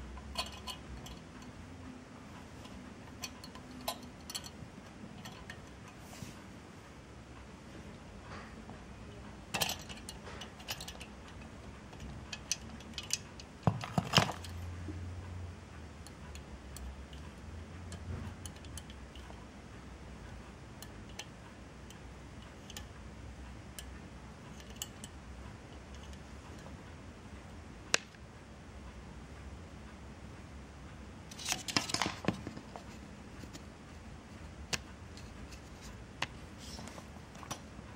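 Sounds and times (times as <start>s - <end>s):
small hard parts clicking: 0.1s - 1.6s, 2.5s - 6.0s, 9.5s - 14.7s, 16.0s - 19.5s.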